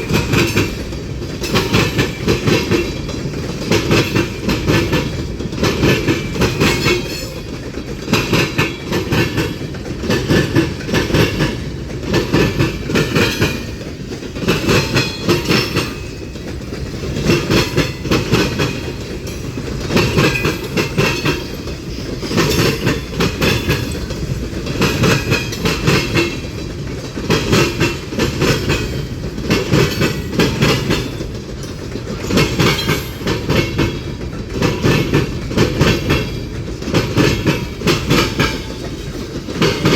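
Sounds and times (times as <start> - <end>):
train rumble: 0.0 - 39.9
train wheels clacking over rail joints: 0.0 - 39.9.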